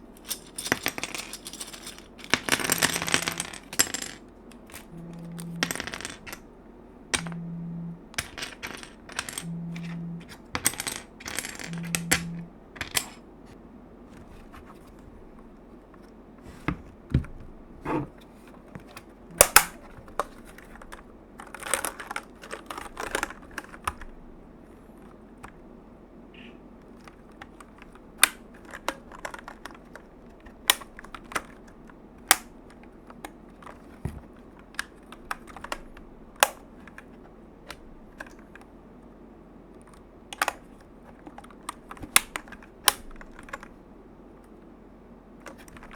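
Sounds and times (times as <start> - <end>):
low hum: 4.7 - 10.5, 11.3 - 12.8
clicks of small hard parts: 18.8 - 24.1, 39.9 - 43.7.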